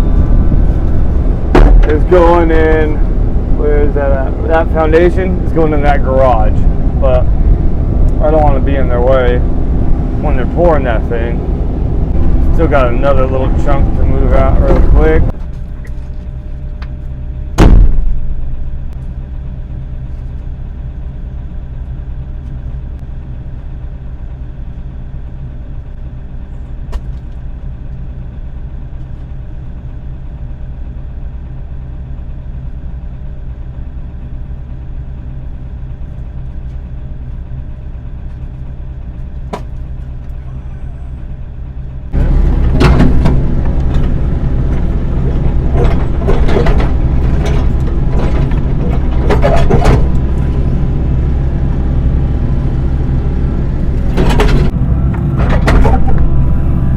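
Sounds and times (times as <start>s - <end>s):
diesel engine running: 0.0s - 56.9s
clanking and scraping of metal: 42.1s - 51.6s, 53.7s - 56.4s.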